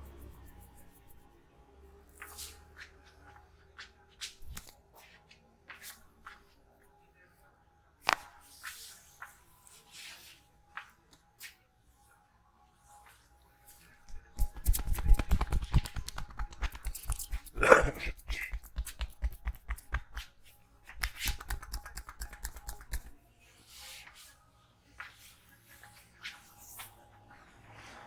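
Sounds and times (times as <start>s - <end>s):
hands tapping and slapping head: 14.1s - 23.2s.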